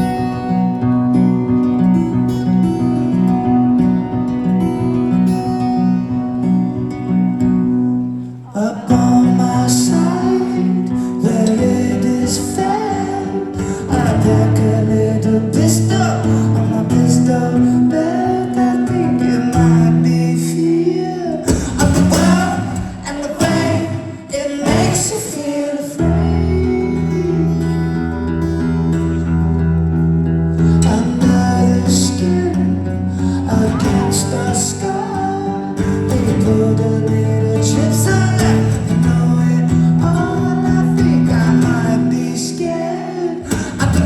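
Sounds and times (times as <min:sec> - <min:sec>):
live rock band: 0:00.0 - 0:44.0
people singing: 0:08.4 - 0:29.4, 0:30.8 - 0:44.0.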